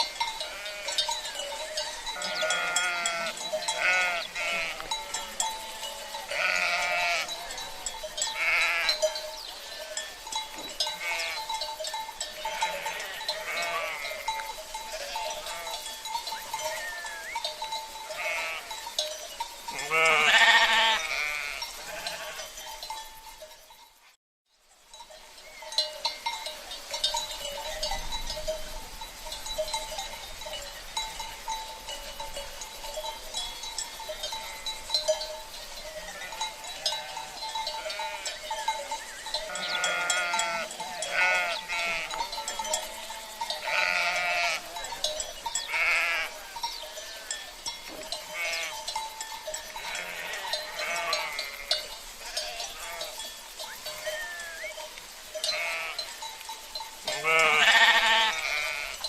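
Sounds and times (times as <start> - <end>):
cowbells clanking and ringing: 0.0 - 59.0
sheep bleating: 0.4 - 1.1, 2.1 - 7.4, 8.3 - 9.0, 10.9 - 11.5, 12.5 - 14.3, 14.9 - 15.9, 18.1 - 18.8, 19.8 - 22.5, 39.5 - 42.2, 42.9 - 44.9, 45.6 - 46.4, 48.3 - 48.8, 49.8 - 54.7, 55.4 - 56.1, 57.1 - 59.0.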